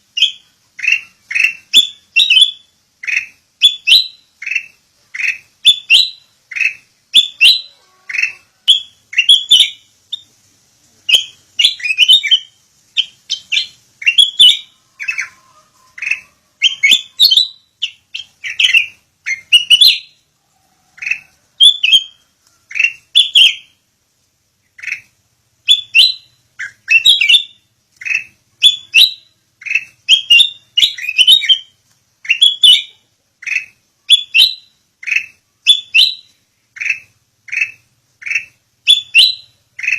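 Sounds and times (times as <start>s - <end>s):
bulbul chirping: 0.1s - 10.4s, 11.0s - 20.3s, 21.0s - 23.8s, 24.6s - 39.9s.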